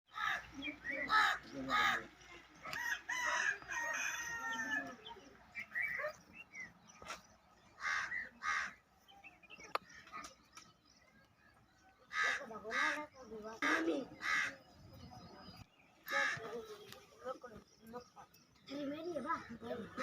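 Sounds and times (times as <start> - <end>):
rooster crowing: 2.7 - 5.0
crow cawing: 7.8 - 8.8, 12.1 - 14.6.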